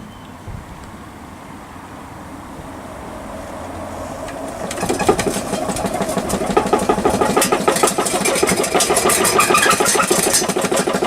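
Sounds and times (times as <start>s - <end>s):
vibrating tumbler rattling: 2.7s - 11.0s.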